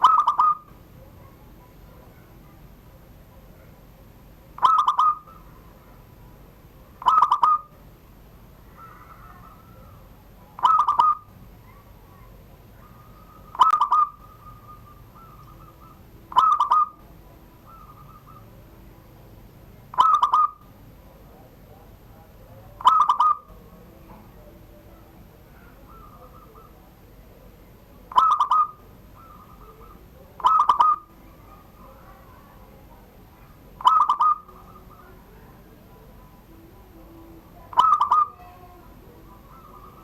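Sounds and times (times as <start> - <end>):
soft dove coos: 0.0 - 2.2, 4.6 - 5.8, 7.0 - 7.7, 8.6 - 18.6, 20.0 - 20.6, 22.8 - 23.6, 25.5 - 26.9, 28.1 - 32.3, 33.4 - 35.6, 37.6 - 40.0
dove singing rolling coo phrases: 0.0 - 40.0.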